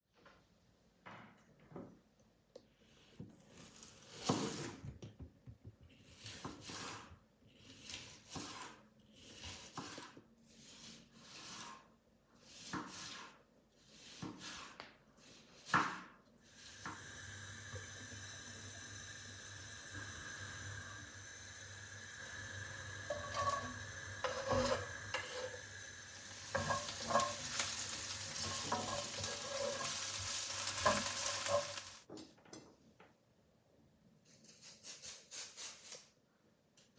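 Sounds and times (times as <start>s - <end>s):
utensil scraping a pan: 5.9s - 15.9s, 22.2s - 32.0s
vegetables sizzling in oil: 17.0s - 32.1s
vegetables being grated: 23.1s - 25.6s, 26.2s - 32.0s.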